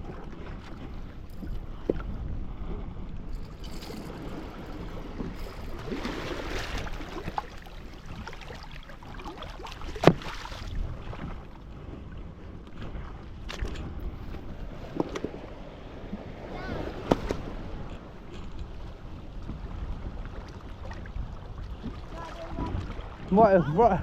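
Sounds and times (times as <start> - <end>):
wind buffeting microphone: 0.0 - 24.0
sea washing against rocks: 3.4 - 11.4, 13.9 - 24.0.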